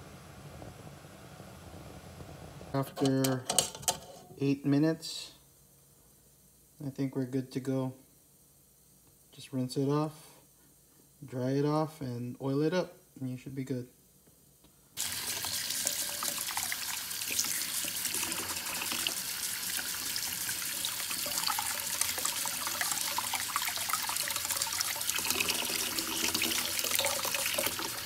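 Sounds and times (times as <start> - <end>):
tap water running into sink: 15.0 - 28.0.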